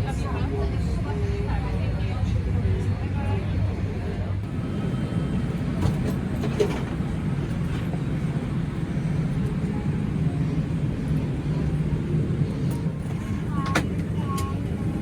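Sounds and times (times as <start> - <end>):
low mechanical rumble: 4.2 - 15.0.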